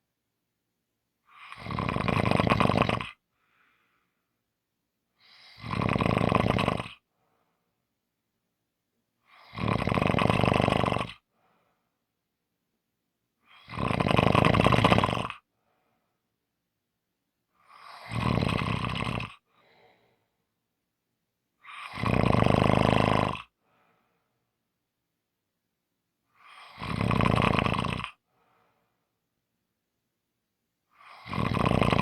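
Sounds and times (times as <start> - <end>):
person snoring: 1.3 - 3.2, 5.2 - 7.0, 9.2 - 11.3, 13.4 - 15.4, 17.6 - 20.1, 21.6 - 23.6, 26.4 - 28.2, 30.9 - 32.0.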